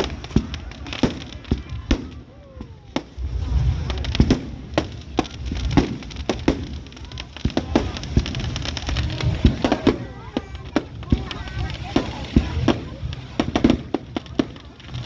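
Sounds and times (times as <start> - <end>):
fireworks bangs: 0.0 - 15.0
low rumble: 2.4 - 6.3.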